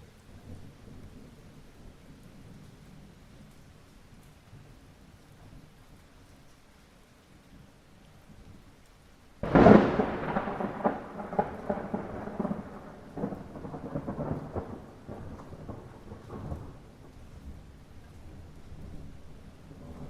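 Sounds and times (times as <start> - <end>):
light rain: 0.0 - 20.0
thunderclap rolling and crackling: 9.4 - 20.0.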